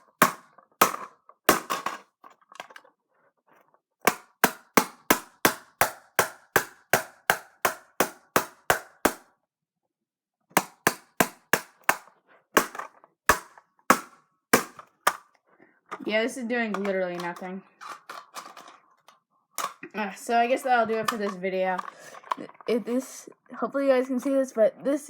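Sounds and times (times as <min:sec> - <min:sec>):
hard strikes on plastic shell: 0:00.0 - 0:02.0, 0:04.1 - 0:09.2, 0:10.6 - 0:15.2.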